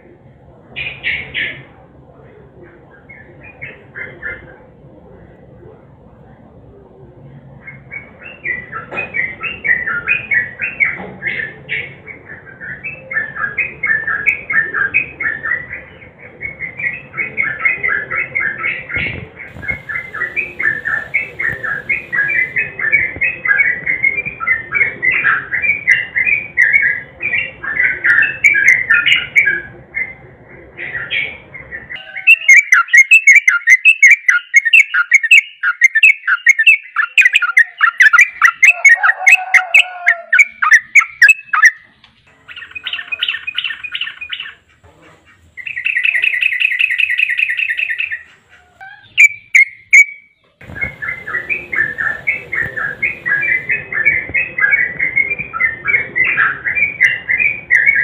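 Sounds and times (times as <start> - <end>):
bird song bubbling chattering: 18.4 - 27.0, 40.3 - 41.9, 42.5 - 44.8, 45.6 - 58.0.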